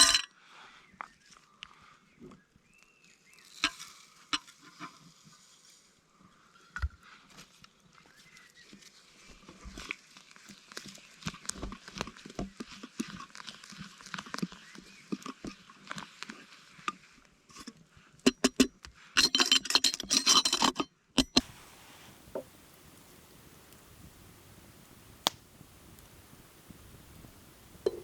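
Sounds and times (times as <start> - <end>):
clicks of handling cooking gear: 17.5 - 21.6.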